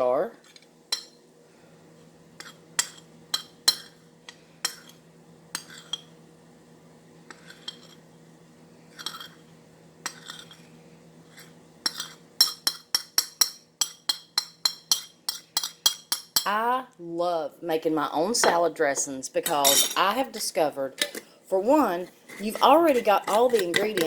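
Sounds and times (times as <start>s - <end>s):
metal spoon clinking on glass jar: 19.6s - 20.0s.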